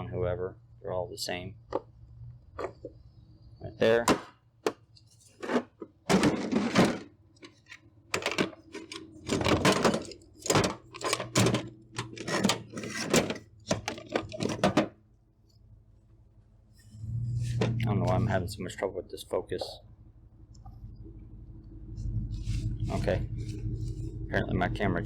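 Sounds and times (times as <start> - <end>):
tools clunking in metal drawer: 5.4 - 14.9.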